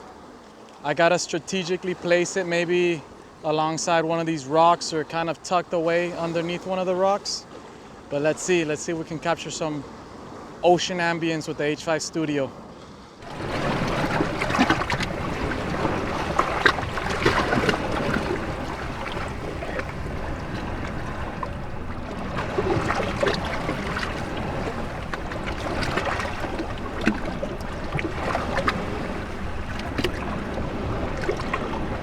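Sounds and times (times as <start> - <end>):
ocean waves washing among rocks: 0.0 - 32.0
steady wind: 0.0 - 32.0
water splashing and gurgling: 13.2 - 32.0.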